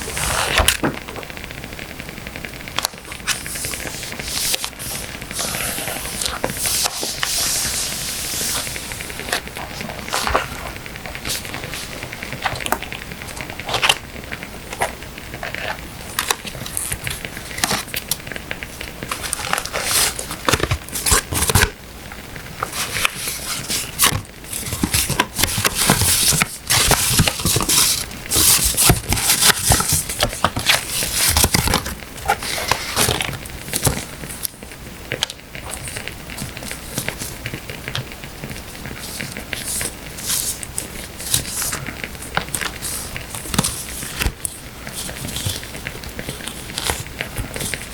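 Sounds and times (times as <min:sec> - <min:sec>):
paper and sticker sheets rustling: 0:00.0 - 0:01.2, 0:02.9 - 0:14.0, 0:14.7 - 0:21.7, 0:22.6 - 0:34.5, 0:35.1 - 0:47.9.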